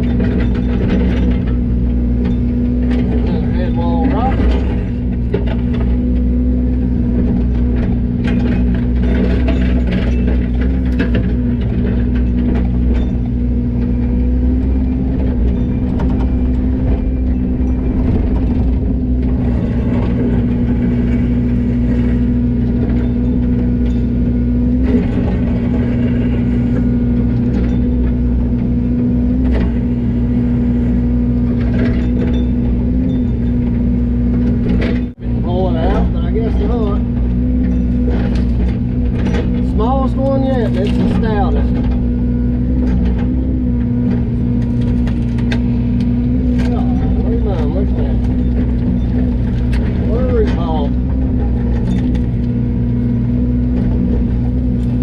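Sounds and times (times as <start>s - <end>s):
machinery clicks and knocks: 0.0s - 6.3s, 7.0s - 55.0s
diesel engine running: 0.0s - 55.0s.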